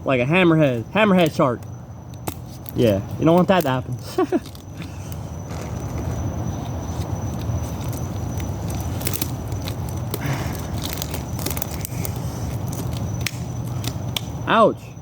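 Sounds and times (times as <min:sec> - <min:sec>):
rubber bands snapping: 0:07.4 - 0:14.4.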